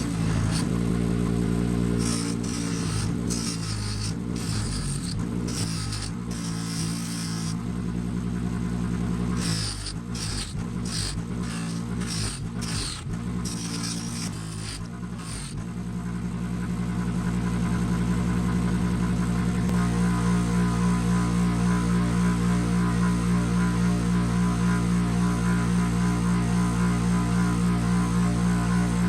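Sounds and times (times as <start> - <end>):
high hiss of grinding: 0.0 - 0.7, 2.0 - 7.6, 9.4 - 15.6
power tool motor humming: 0.0 - 7.7, 9.3 - 15.9.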